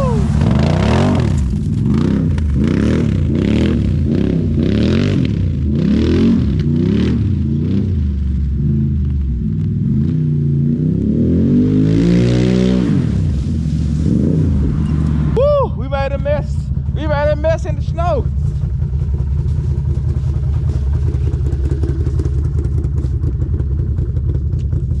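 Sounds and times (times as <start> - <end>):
quad bike engine revving: 0.0 - 9.0, 9.8 - 15.4, 19.9 - 25.0.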